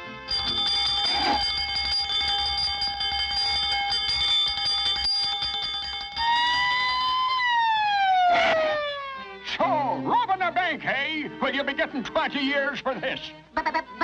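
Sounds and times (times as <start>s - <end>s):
electric alarm bell ringing: 0.0s - 7.8s
police siren rising in pitch: 6.2s - 10.1s.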